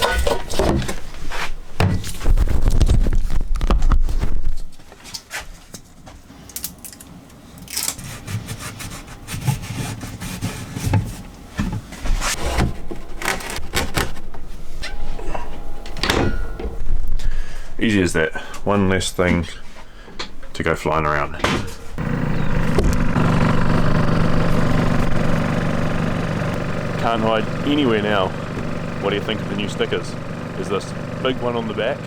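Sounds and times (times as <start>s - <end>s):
dull rumble: 21.8s - 32.0s.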